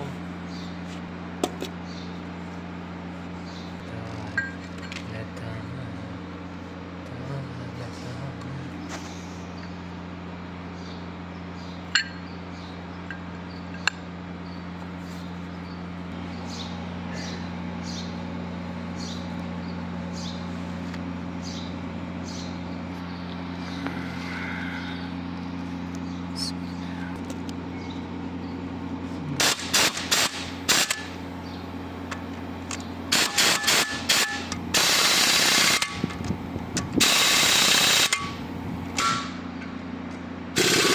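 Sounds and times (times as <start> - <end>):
low machine hum: 0.0 - 40.9
power tool bursts: 29.4 - 31.2, 33.1 - 36.0, 37.0 - 38.4, 40.6 - 40.9.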